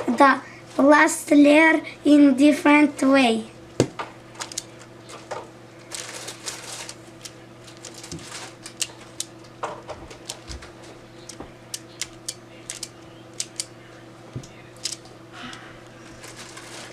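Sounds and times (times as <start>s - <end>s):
faint steady hum: 0.0s - 16.9s
plastic puzzle pieces clicking: 11.3s - 13.7s, 14.8s - 15.0s.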